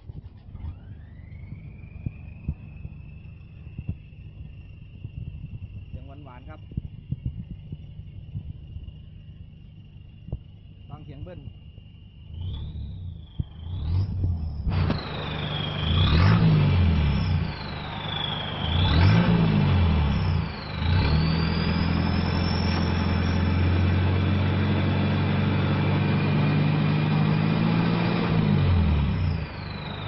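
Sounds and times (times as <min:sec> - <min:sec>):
engine revving: 0:12.3 - 0:30.0
turbo whistle: 0:12.4 - 0:24.0.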